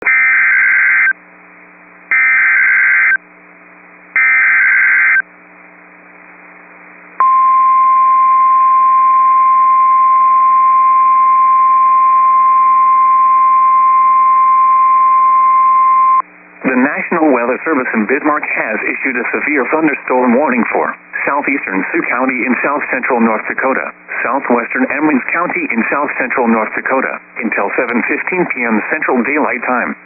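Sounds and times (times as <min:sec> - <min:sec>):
steady warning alarm tone: 0:02.1 - 0:03.2, 0:04.2 - 0:05.2
electronic data warble: 0:04.2 - 0:05.2
radio hiss: 0:16.6 - 0:30.0.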